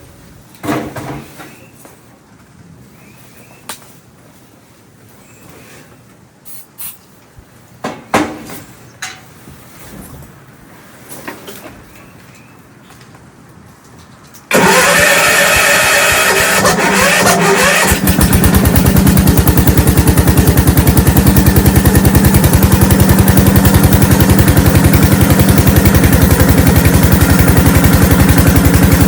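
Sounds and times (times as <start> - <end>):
tractor engine starting and running: 14.4 - 29.0.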